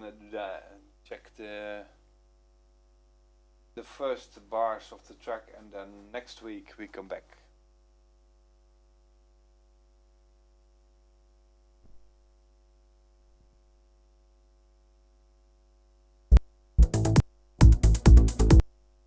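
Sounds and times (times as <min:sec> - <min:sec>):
faint electrical hum: 0:00.0 - 0:17.6, 0:18.6 - 0:19.0
electronic trance music: 0:16.8 - 0:18.6.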